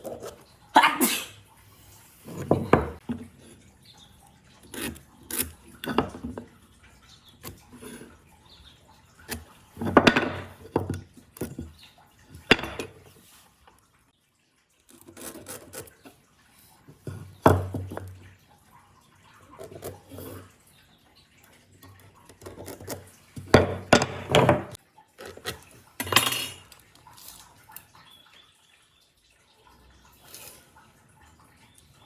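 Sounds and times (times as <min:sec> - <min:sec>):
hard objects clattering and knocking: 0:02.2 - 0:03.3, 0:09.3 - 0:11.8, 0:22.3 - 0:26.9.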